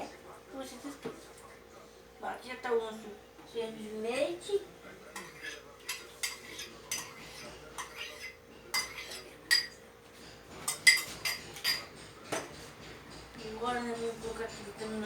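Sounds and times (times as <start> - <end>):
metal spoon clinking on container: 7.8 - 15.0.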